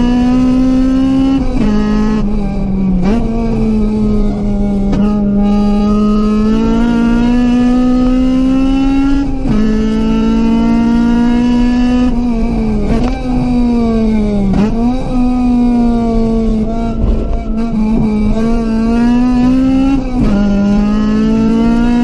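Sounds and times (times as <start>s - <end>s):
car engine revving high: 0.0s - 22.0s.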